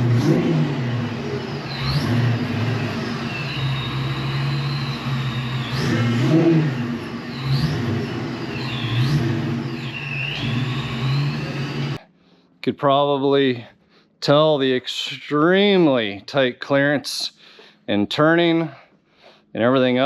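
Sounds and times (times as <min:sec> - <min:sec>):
car engine revving: 0:00.0 - 0:12.0
high squeals: 0:01.2 - 0:12.0.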